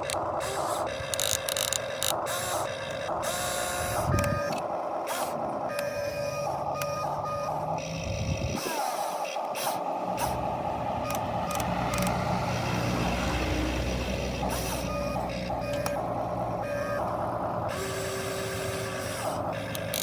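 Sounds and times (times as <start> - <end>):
buzzing motor whine: 0.0 - 20.0.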